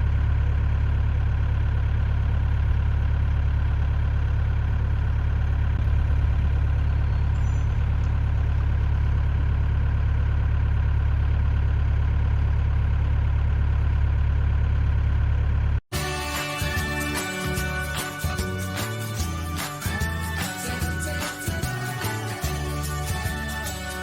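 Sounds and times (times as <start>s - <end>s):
diesel engine humming: 0.0s - 24.0s
music: 15.9s - 24.0s.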